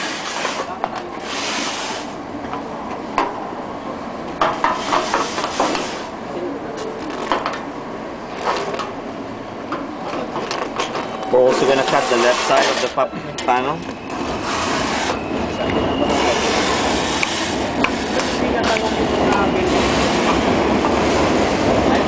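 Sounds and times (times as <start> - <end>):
sheet metal being cut: 11.6 - 13.0.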